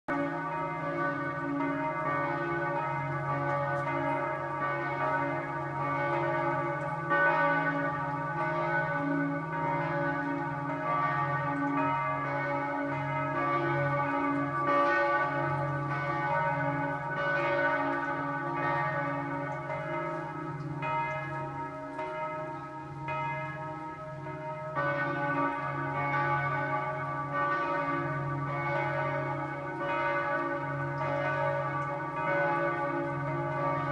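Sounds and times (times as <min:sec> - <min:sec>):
church bells pealing: 0:00.1 - 0:33.9.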